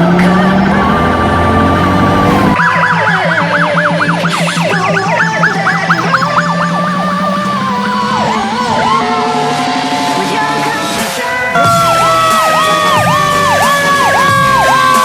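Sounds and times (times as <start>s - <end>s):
emergency vehicle siren: 0.0s - 15.0s.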